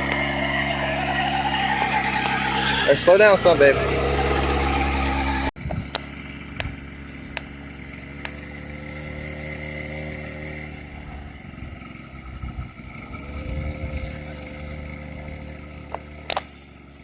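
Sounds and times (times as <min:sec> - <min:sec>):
small atv engine running: 0:00.0 - 0:17.0
sharp clicks: 0:15.9 - 0:16.5.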